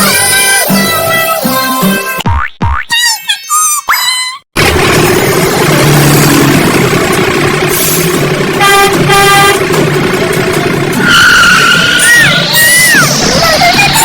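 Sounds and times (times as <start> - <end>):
vehicle engine running: 4.6 - 14.0
car horn tooting: 8.6 - 9.8.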